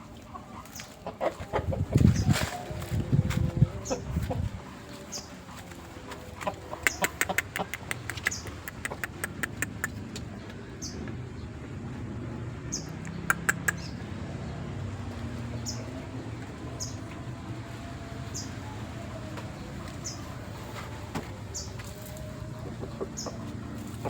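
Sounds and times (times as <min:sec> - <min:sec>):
sharp clicks: 0:06.9 - 0:10.3, 0:13.0 - 0:13.9.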